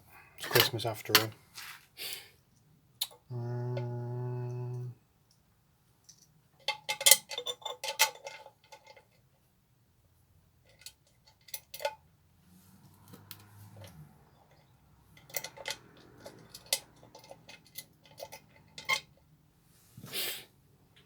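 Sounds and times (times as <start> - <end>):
metal parts clinking and clattering: 6.1 - 9.2, 10.7 - 12.0, 15.2 - 19.2.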